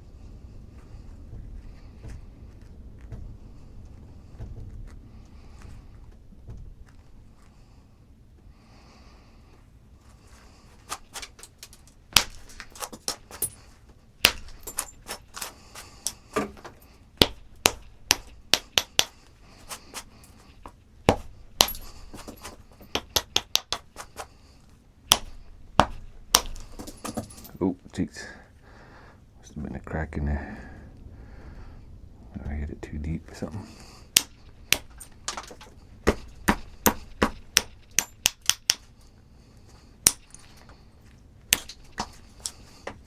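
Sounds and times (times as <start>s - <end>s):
faint handling: 0.0s - 43.0s
stone flintknapping clicks and snaps: 10.5s - 24.4s, 25.1s - 27.4s, 33.8s - 39.1s, 40.0s - 40.8s, 41.5s - 43.0s.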